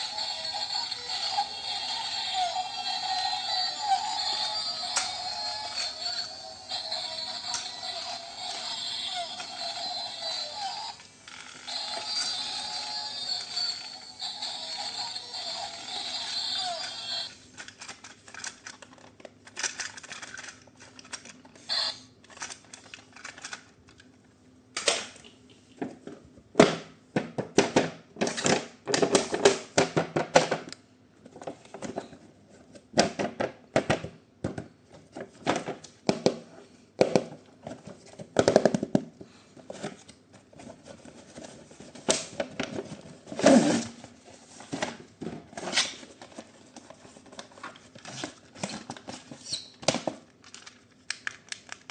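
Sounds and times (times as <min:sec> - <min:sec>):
plastic toy parts clicking and rattling: 0:04.2 - 0:10.4, 0:14.4 - 0:21.6, 0:22.2 - 0:24.1, 0:50.3 - 0:51.9.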